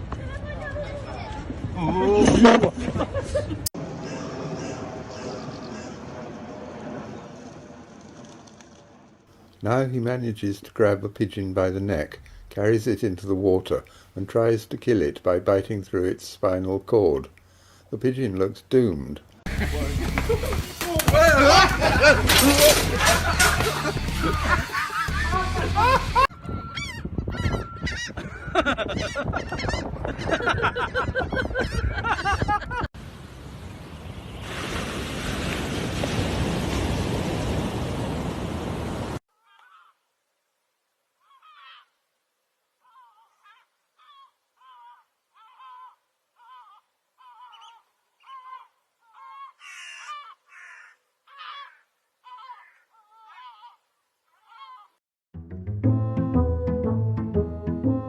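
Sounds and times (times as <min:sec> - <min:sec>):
gulls calling: 0:03.8 - 0:06.9, 0:42.8 - 0:53.8.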